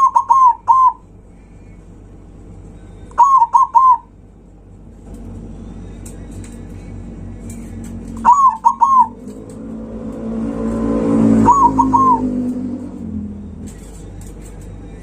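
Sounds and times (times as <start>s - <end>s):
dove cooing: 0.0s - 1.1s, 3.2s - 4.1s, 8.2s - 12.7s
vehicle engine passing: 0.0s - 15.0s.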